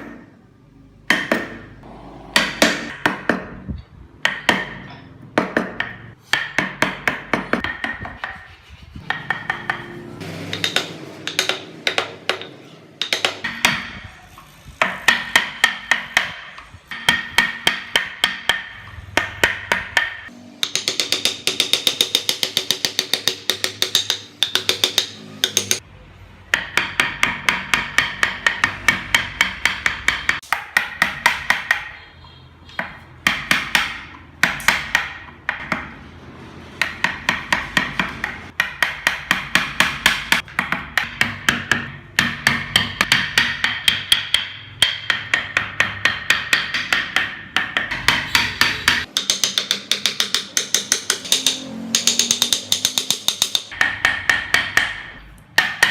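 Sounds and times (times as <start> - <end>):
hammer striking metal: 36.8 - 55.9.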